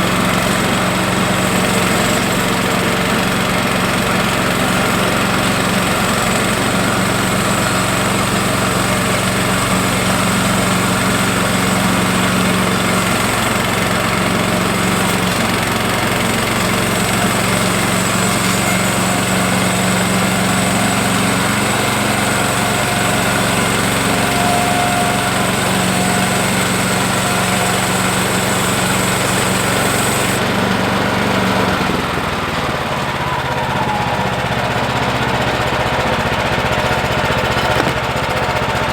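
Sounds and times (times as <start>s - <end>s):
small gas engine running: 0.0s - 38.9s
band blade cutting log: 3.8s - 30.4s, 37.5s - 38.1s.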